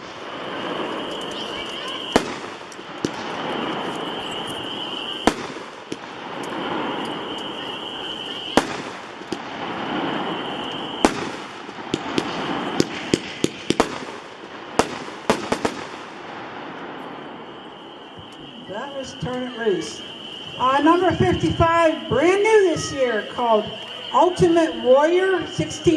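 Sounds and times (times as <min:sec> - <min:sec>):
firework cake firing: 0:00.0 - 0:24.9
sharp pops and cracks: 0:01.0 - 0:04.6.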